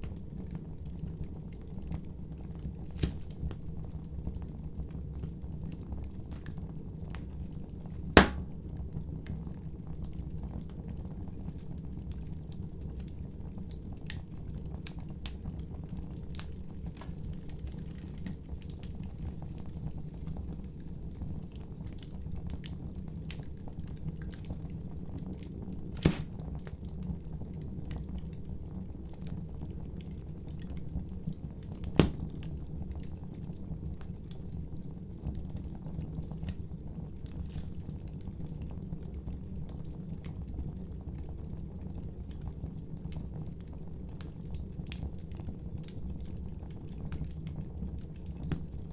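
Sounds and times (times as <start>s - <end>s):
fire crackling: 0.0s - 10.7s, 12.0s - 48.9s
wood fire rumbling: 0.0s - 48.9s
loud sharp pops from fire: 2.8s - 3.6s, 8.1s - 8.8s, 25.8s - 26.7s, 31.8s - 32.6s.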